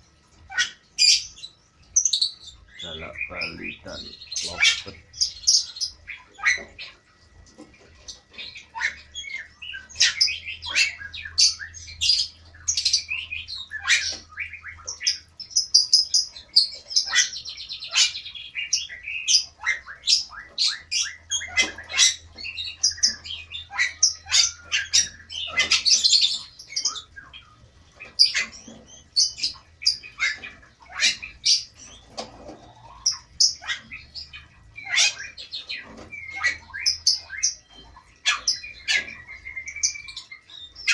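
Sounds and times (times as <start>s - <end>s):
caged birds squawking and chirping: 0.0s - 40.9s.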